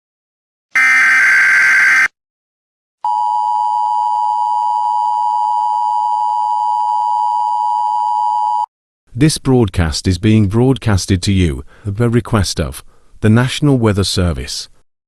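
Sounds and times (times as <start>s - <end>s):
buzzy digital data burst: 0.8s - 2.1s
two-tone attention alarm: 0.8s - 2.2s.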